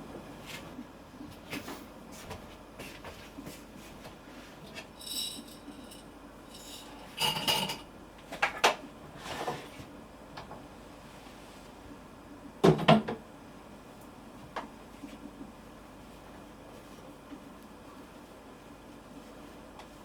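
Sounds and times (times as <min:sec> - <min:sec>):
dishes clattering: 0:06.8 - 0:07.9.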